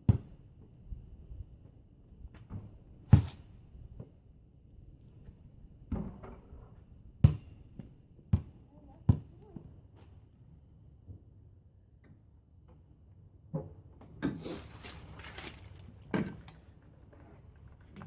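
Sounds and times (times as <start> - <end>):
handling noise: 14.4 - 18.0.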